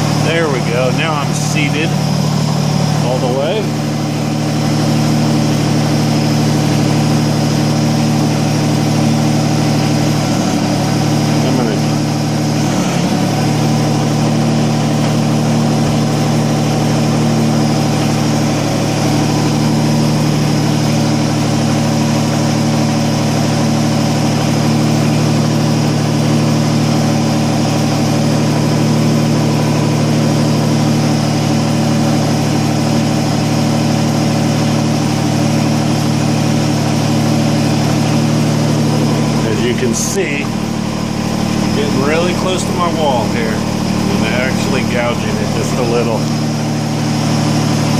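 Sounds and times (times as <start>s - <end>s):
tractor diesel engine running: 0.0s - 47.9s.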